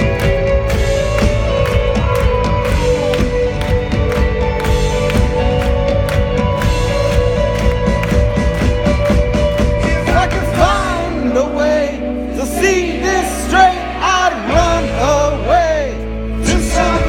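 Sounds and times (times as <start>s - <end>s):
drums beating: 0.0s - 11.2s
rock band playing: 0.0s - 17.0s.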